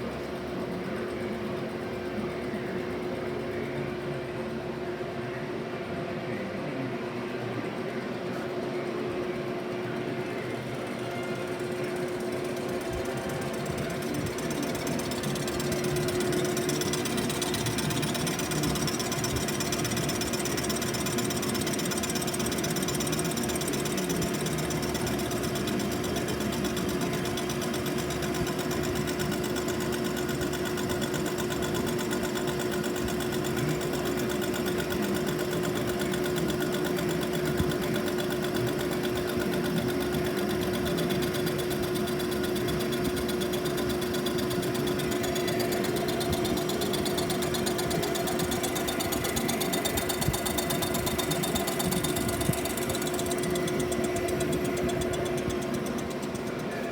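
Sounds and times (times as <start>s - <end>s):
machine tool humming: 8.6s - 56.9s
cutter rattling on metal: 11.5s - 56.9s.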